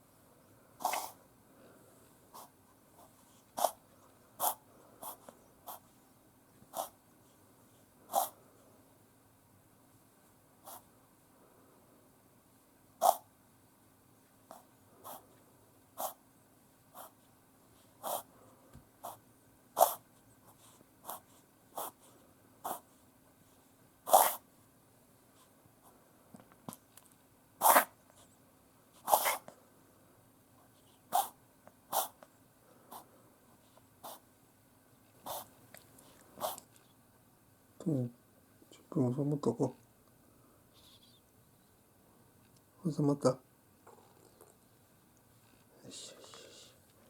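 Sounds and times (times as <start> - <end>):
dog reverse sneezing: 0.8 - 1.2, 24.1 - 24.4, 27.6 - 27.9, 29.0 - 29.4, 35.2 - 35.5.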